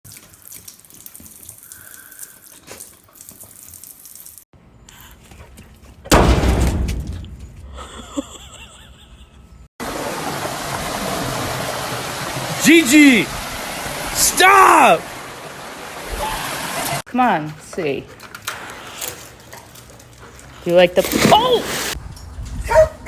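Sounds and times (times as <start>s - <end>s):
loud water splash: 9.8s - 17.0s
rushing water: 9.8s - 17.0s.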